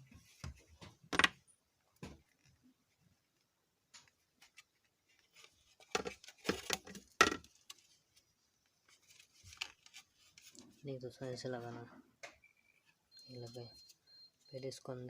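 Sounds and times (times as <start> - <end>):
plastic knocks: 5.9 - 7.5.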